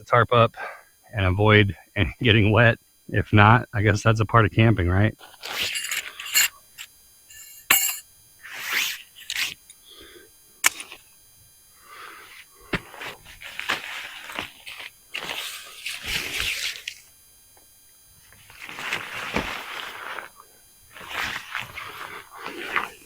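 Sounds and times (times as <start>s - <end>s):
tent pole clicks: 10.6s - 11.1s
tent fabric rustling: 12.1s - 17.1s, 18.2s - 23.0s.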